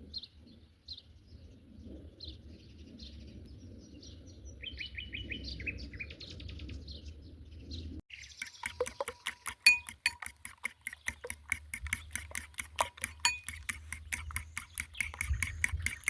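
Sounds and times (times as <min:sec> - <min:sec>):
small birds chirping: 0:00.1 - 0:16.0
sharp clinks: 0:08.5 - 0:16.0.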